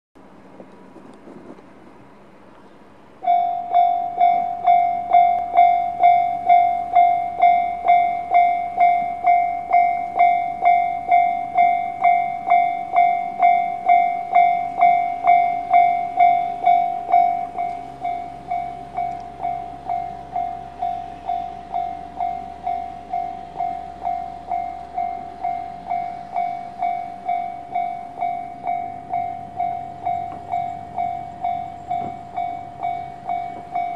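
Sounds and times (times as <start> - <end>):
bell-like ding: 3.3 - 33.9.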